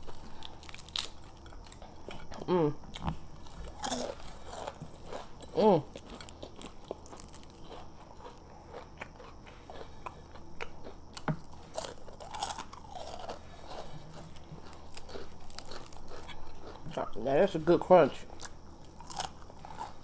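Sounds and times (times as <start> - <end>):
person chewing crunchy food: 0.0 - 20.0.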